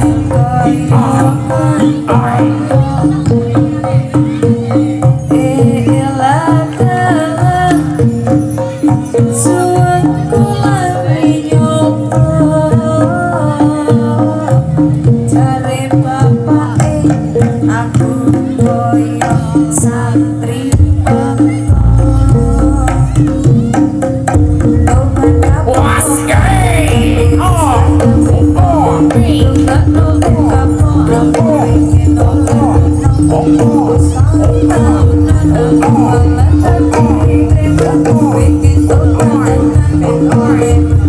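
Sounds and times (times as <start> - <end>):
hand drums: 0.0 - 41.0
wavering melody line: 17.7 - 41.0.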